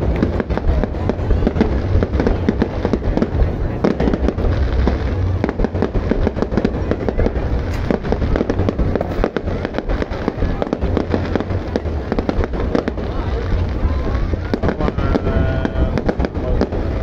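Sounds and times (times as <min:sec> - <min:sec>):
deep rolling rumble: 0:00.0 - 0:17.0
fireworks bangs and crackling: 0:00.0 - 0:17.0.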